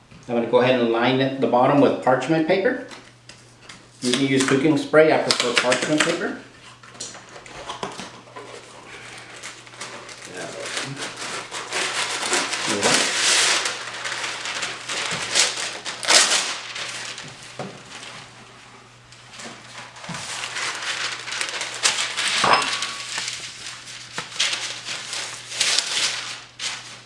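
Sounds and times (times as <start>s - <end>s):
parchment paper rustling: 3.0s - 27.0s.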